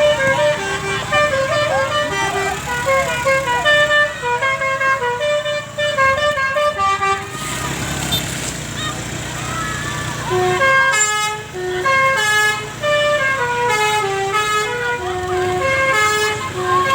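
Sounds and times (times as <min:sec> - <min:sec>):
bus horn playing melody: 0:00.0 - 0:08.4, 0:10.0 - 0:16.9.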